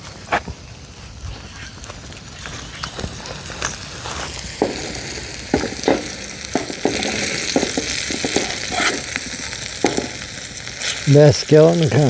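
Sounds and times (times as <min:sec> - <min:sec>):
meat and onions sizzling: 0:00.0 - 0:12.0
spatula scraping pan: 0:03.6 - 0:11.1.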